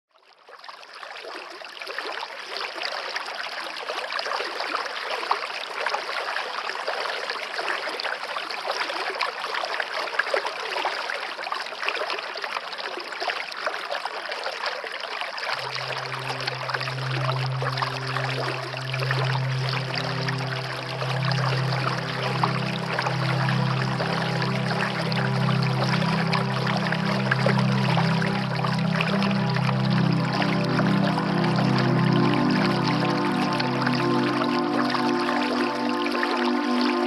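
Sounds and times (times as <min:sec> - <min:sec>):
low steady drone: 0:15.6 - 0:37.0
waterfall rushing: 0:15.6 - 0:37.0.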